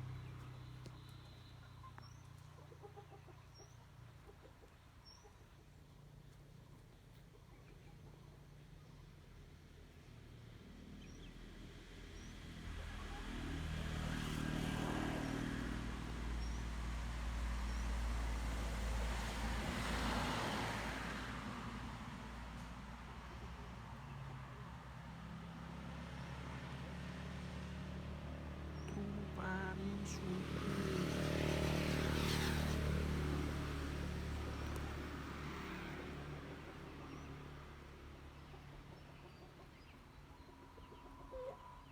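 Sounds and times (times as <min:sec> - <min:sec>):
vehicle engine running: 0:00.0 - 0:04.3
vehicle engine driving past: 0:00.0 - 0:06.8, 0:09.7 - 0:41.9.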